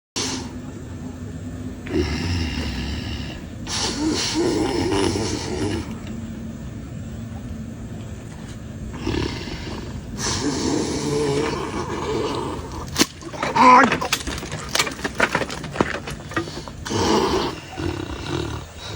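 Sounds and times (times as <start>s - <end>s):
person snoring loudly: 1.8s - 6.0s, 8.9s - 13.8s, 16.8s - 18.9s.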